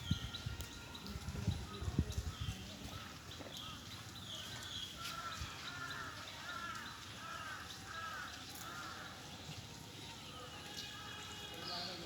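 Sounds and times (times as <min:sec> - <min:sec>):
crow cawing: 0:05.1 - 0:09.1.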